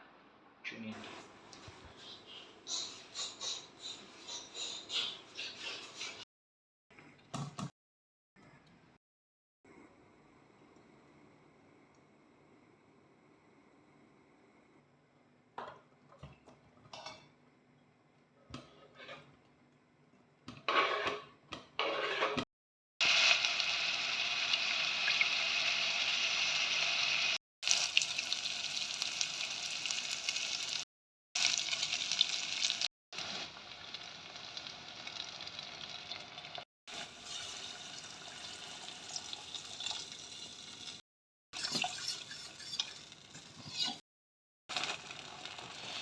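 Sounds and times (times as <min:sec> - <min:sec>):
food sizzling in a pot: 0:23.0 - 0:30.8, 0:31.4 - 0:41.0, 0:44.7 - 0:46.0.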